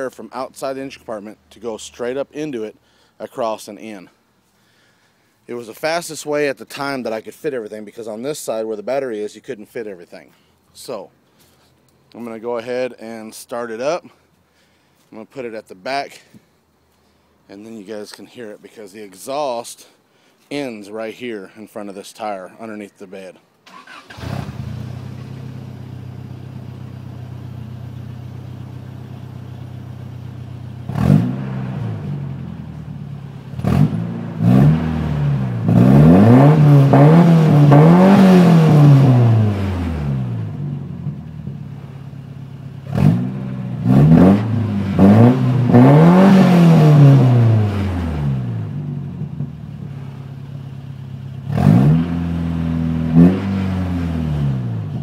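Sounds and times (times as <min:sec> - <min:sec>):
pickup engine idling and revving: 0:24.1 - 0:55.0.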